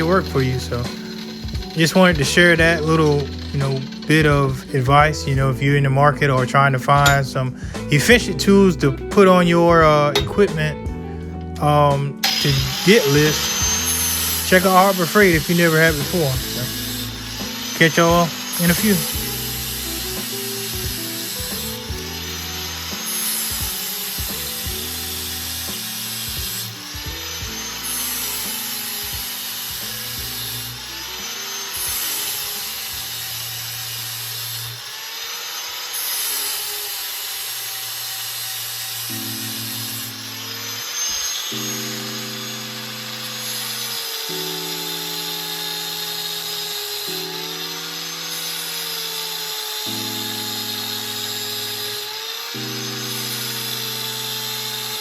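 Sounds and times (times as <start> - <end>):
background music with bass: 0.0 - 34.8, 49.6 - 55.0
power grinder grinding metal: 0.0 - 55.0.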